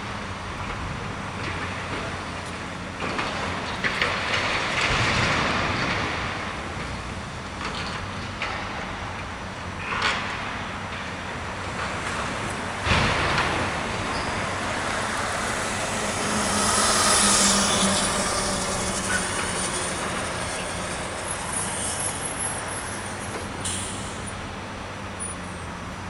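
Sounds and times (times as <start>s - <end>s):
engine humming: 0.0s - 26.0s
demolition crash: 3.0s - 24.4s
high-pitched grinding: 14.2s - 24.1s.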